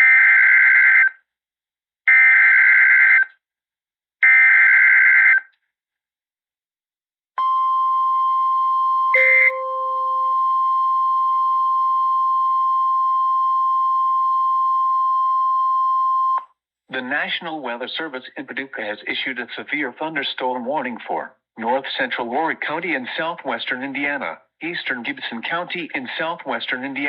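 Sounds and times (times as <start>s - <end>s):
steady alarm tone: 9.1s - 11.0s
lower beep: 9.1s - 11.4s
data bursts: 9.2s - 10.3s.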